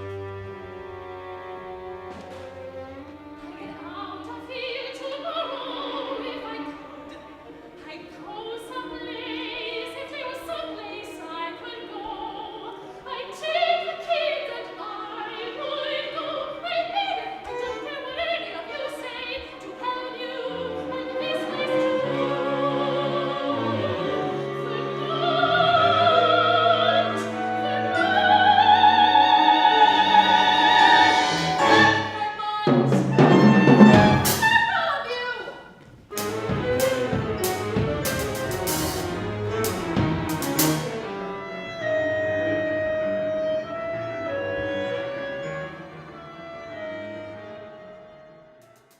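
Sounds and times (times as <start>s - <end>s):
instrumental accompaniment: 0.0s - 5.4s, 19.4s - 34.8s, 35.7s - 48.9s
soprano singing opera: 3.3s - 35.7s.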